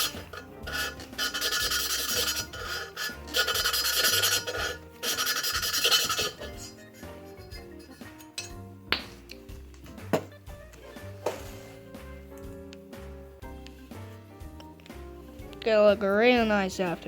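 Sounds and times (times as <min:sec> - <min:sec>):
valve lapping grinding scrape: 0:00.0 - 0:06.9
background music with held notes: 0:00.0 - 0:17.0.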